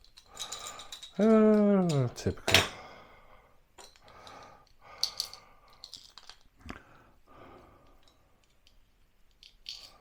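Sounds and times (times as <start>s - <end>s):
small screws clicking and tapping: 3.8s - 6.5s, 7.8s - 10.0s.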